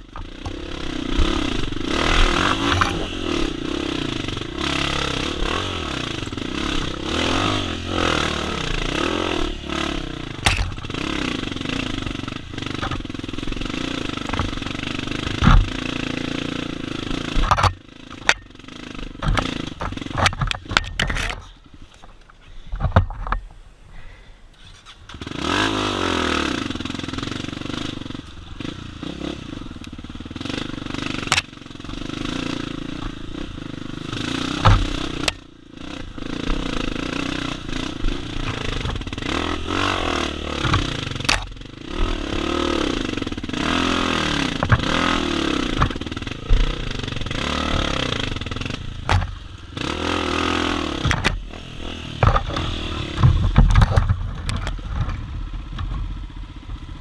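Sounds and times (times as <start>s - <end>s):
motorcycle engine revving: 0.0s - 21.7s, 24.6s - 57.0s
sharp knocks: 34.5s - 35.4s, 40.5s - 42.5s, 44.4s - 46.8s.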